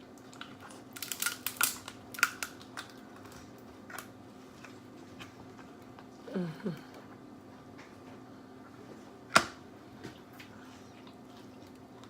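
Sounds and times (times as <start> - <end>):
shells cracking and clicking: 0.4 - 3.4.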